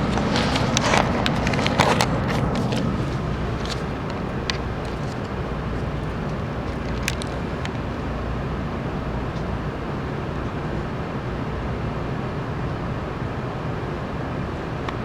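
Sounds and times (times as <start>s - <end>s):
train rumble and hiss: 0.0s - 15.0s
faint clicks: 0.1s - 9.6s.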